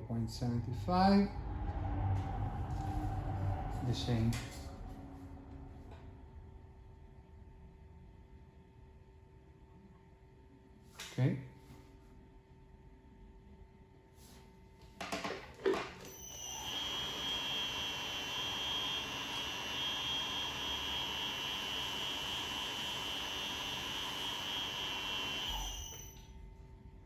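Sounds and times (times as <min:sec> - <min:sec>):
machine high-pitched whine: 0:00.0 - 0:07.9, 0:16.0 - 0:26.4
machine stopping with low thump: 0:00.4 - 0:07.4, 0:16.2 - 0:26.2.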